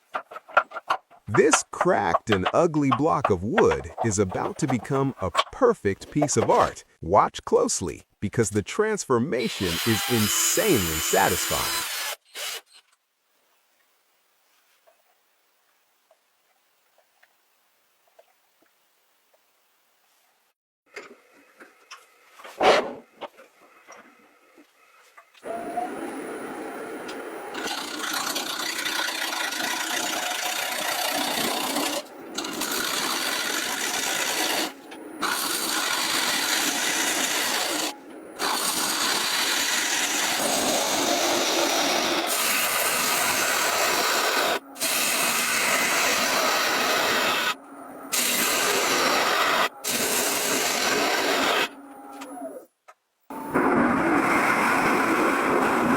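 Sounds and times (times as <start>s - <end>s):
tools rasping wood: 0.0s - 6.7s, 27.5s - 51.8s.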